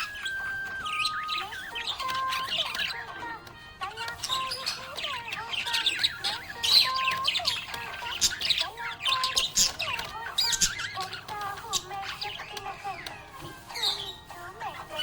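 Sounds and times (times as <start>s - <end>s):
budgerigars chirping and squawking: 0.0s - 15.0s.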